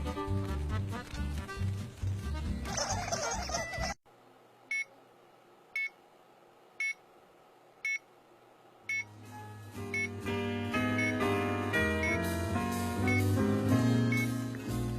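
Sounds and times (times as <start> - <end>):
music: 0.0 - 4.0, 9.0 - 14.9.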